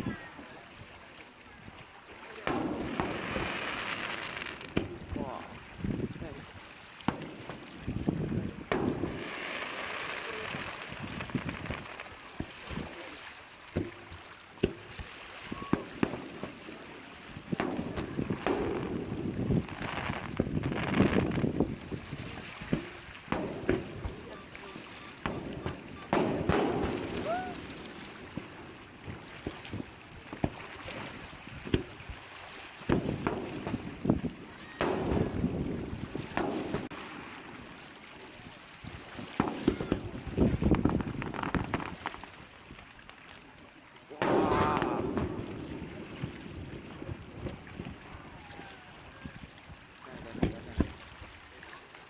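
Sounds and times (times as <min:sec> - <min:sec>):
firework bang: 0:02.4 - 0:05.3, 0:07.1 - 0:12.9, 0:15.5 - 0:32.0, 0:32.9 - 0:37.9, 0:39.2 - 0:42.3, 0:44.2 - 0:48.0
firework pops: 0:02.4 - 0:06.2, 0:07.1 - 0:13.0, 0:13.7 - 0:32.1, 0:32.8 - 0:42.5, 0:44.2 - 0:48.0, 0:50.4 - 0:51.1
firework crackling hiss: 0:02.5 - 0:05.0, 0:07.1 - 0:12.9, 0:15.5 - 0:30.0, 0:39.3 - 0:42.4.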